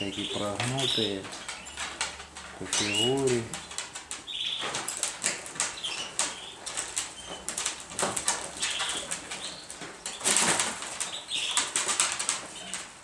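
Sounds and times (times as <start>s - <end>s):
clicks and rustles: 0.0s - 13.0s
pigeons flapping wings: 2.6s - 13.0s.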